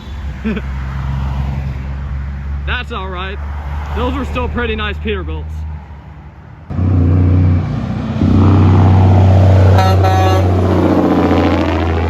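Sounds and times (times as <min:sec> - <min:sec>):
truck diesel engine running: 0:06.7 - 0:12.0
truck horn blast: 0:06.7 - 0:12.0.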